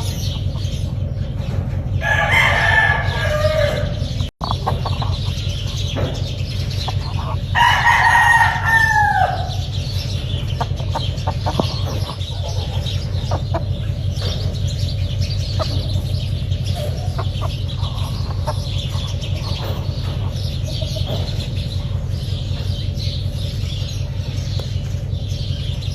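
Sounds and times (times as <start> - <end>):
steady low rumble: 0.0 - 25.9
rooster crowing: 2.0 - 5.4, 6.8 - 10.0.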